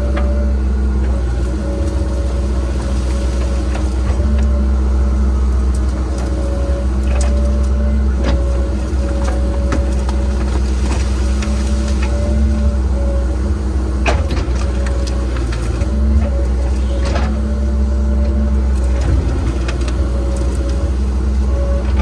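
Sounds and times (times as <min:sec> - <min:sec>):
excavator diesel engine running: 0:00.0 - 0:22.0.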